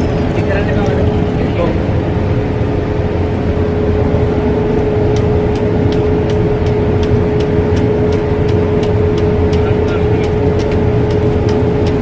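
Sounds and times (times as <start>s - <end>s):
sharp ticks: 5.1s - 12.0s.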